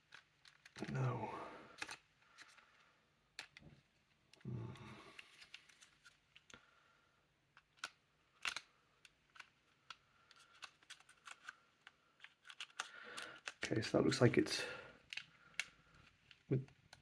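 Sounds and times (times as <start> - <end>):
wooden puzzle box clicking: 1.8 - 2.6, 3.4 - 3.6, 7.6 - 13.6.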